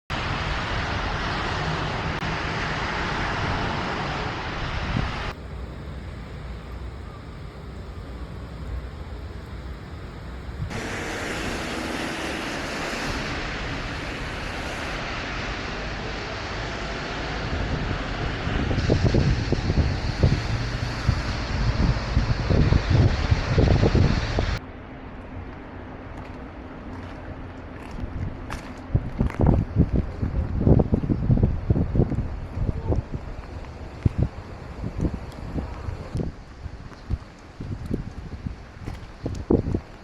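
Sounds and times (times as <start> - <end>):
rain hissing: 0.1 - 24.6
low traffic rumble: 0.1 - 40.0.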